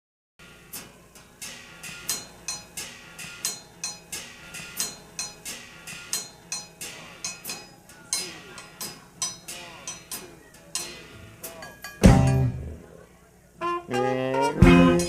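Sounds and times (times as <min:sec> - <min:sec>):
rhythmic metallic percussion: 0:00.4 - 0:12.9, 0:13.8 - 0:15.0.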